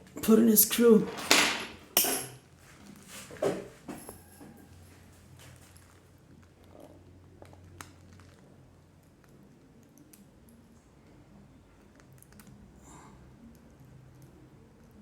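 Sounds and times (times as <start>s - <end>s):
small tools clicking and tapping: 1.2s - 2.4s.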